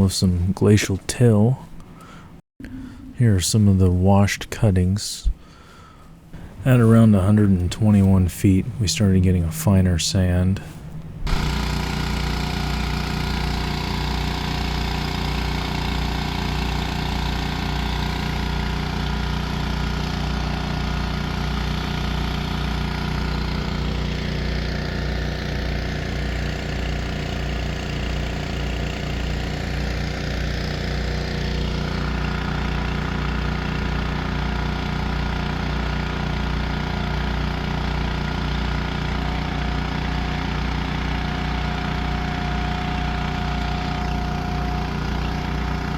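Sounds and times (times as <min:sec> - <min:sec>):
small gasoline engine running: 0:11.2 - 0:45.9.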